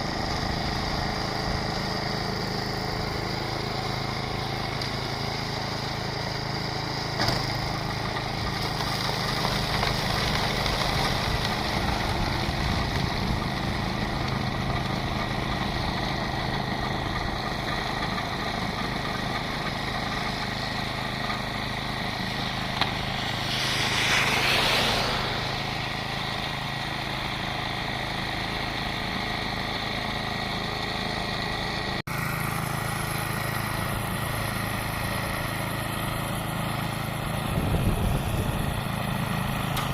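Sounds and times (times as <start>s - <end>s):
snowblower engine running: 0.0s - 39.9s
brief rushing sound: 22.2s - 27.4s.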